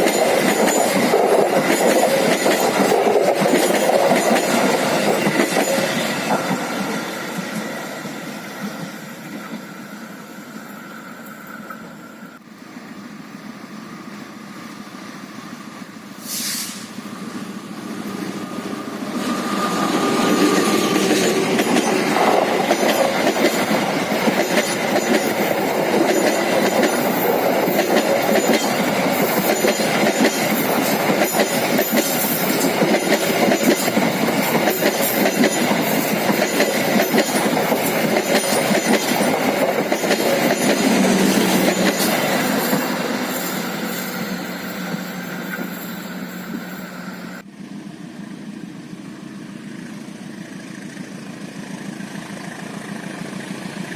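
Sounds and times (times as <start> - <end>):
train clattering over rails: 0.0 - 11.8, 17.2 - 47.4.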